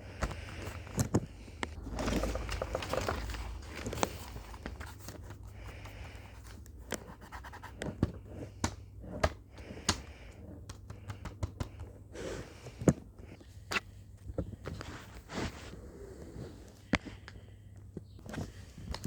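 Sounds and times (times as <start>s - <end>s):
heavy breathing: 0.0s - 7.0s, 7.6s - 13.6s, 14.4s - 19.0s
bag clicks and scratches: 0.3s - 5.5s.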